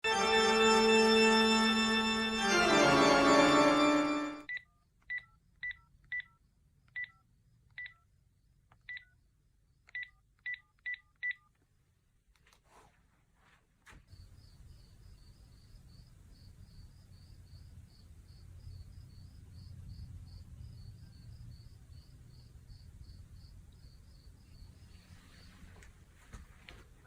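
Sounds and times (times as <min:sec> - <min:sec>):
electronic organ chords: 0:00.0 - 0:04.5
phone keypad beeps: 0:04.5 - 0:07.2, 0:07.8 - 0:08.0, 0:08.8 - 0:09.2, 0:09.9 - 0:11.5.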